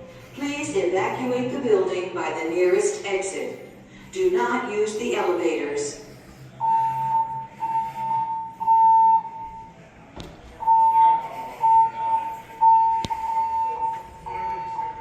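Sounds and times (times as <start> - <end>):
fire alarm high beeps: 6.6 - 9.8, 10.6 - 15.0.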